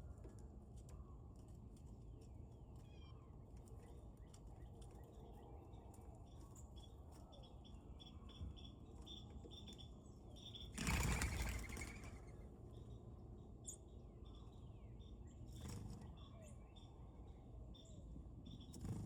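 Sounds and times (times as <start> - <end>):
wings flapping: 10.8 - 12.3.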